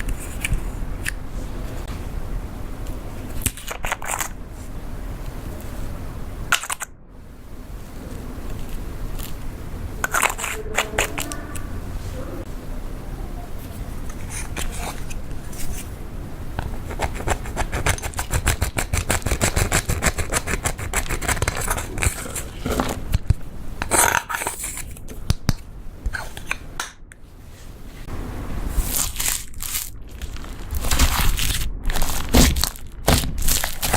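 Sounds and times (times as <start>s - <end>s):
slime squelches: 8.4s - 12.5s.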